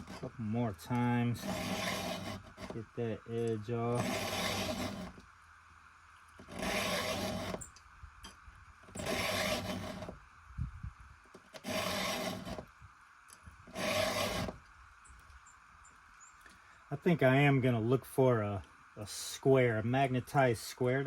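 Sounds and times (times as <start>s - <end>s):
file strokes on chain tooth: 1.4s - 2.8s, 4.0s - 5.1s.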